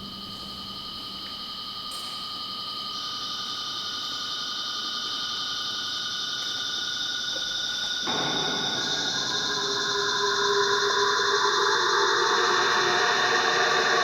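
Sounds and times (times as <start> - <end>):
electronic drone music: 8.1 - 14.0.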